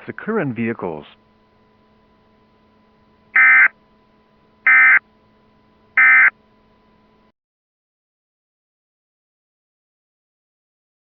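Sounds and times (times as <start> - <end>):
faint steady hum: 0.0 - 7.4
buzzy digital data tones: 3.4 - 3.7, 4.7 - 5.0, 6.0 - 6.3.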